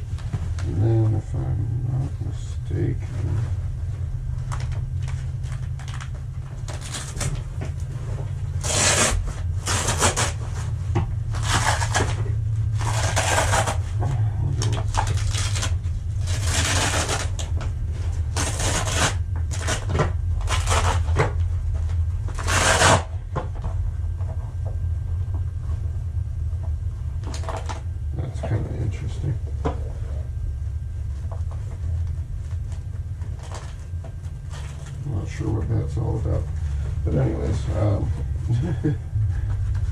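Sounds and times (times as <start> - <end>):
low hum: 0.0 - 39.9
fabric rustling and tearing: 4.5 - 7.5, 8.5 - 10.6, 11.3 - 14.0, 14.7 - 17.5, 18.2 - 21.2, 22.4 - 23.1.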